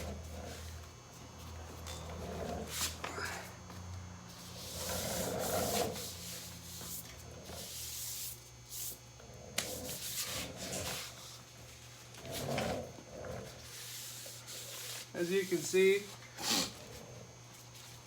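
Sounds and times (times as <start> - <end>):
rubbing and scraping of tire: 4.4 - 8.3.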